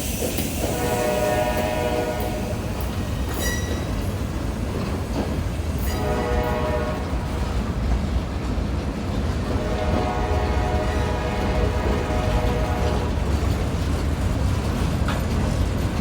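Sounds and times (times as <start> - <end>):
freight train rumbling: 0.0 - 16.0
wheels clicking over rail joints: 2.1 - 6.2, 12.2 - 16.0.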